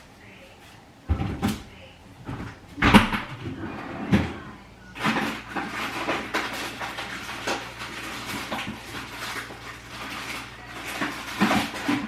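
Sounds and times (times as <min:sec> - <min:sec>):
steady low hum: 0:00.0 - 0:12.0
household objects clicking and clattering: 0:05.0 - 0:12.0.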